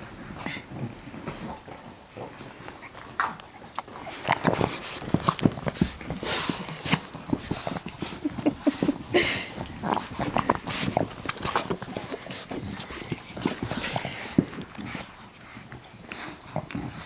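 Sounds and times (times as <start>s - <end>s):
puppies scuffling: 0.0s - 17.0s
puppies squeaking and grunting: 0.4s - 17.0s.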